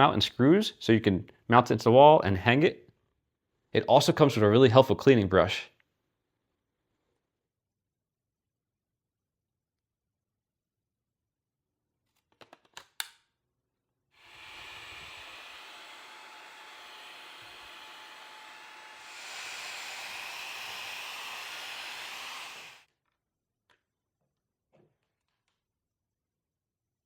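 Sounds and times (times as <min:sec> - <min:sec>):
stick vacuum motor running: 0:14.2 - 0:22.8.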